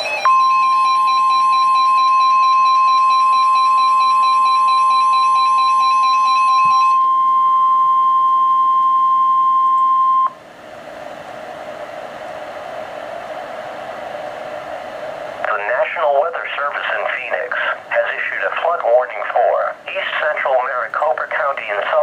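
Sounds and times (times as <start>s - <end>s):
steady electronic alarm tone: 0.0s - 10.4s
radio hiss: 15.4s - 22.0s.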